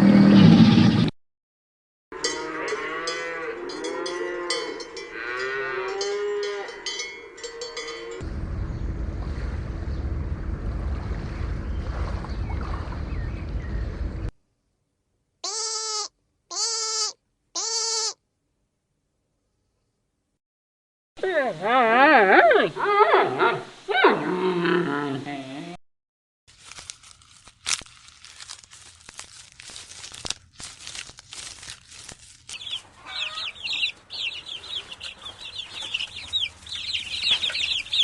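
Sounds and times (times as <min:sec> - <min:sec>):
cowbells clinking: 0:02.2 - 0:08.2
steady rumbling noise: 0:08.2 - 0:14.3
short pitched animal calls: 0:15.4 - 0:18.2.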